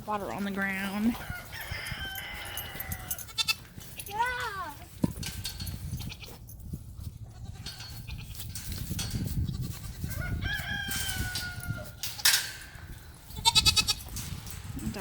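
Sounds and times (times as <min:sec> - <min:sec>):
farm animal calling: 0:00.3 - 0:04.3, 0:13.3 - 0:14.1.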